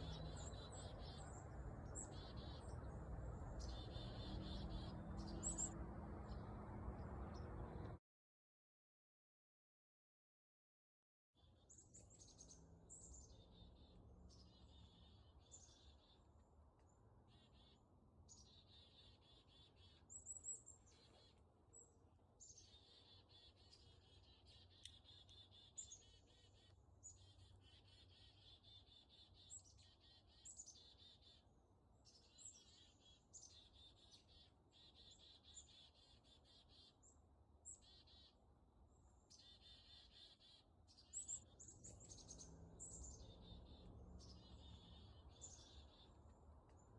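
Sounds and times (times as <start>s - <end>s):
songbird twittering: 3.6s - 6.4s, 39.3s - 46.2s.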